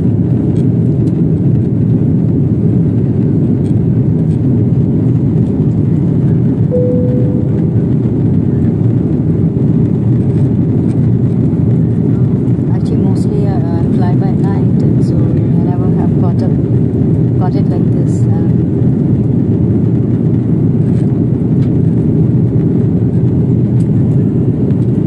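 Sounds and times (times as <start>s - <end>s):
airliner cabin rumble: 0.0s - 25.0s
short single tone: 6.7s - 8.0s.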